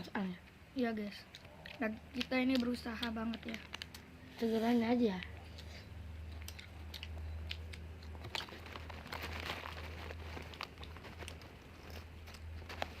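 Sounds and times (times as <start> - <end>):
steady low hum: 0.0 - 13.0
eating sounds: 1.1 - 4.1, 5.1 - 13.0
plastic food packaging crinkling: 2.2 - 4.1, 8.0 - 13.0.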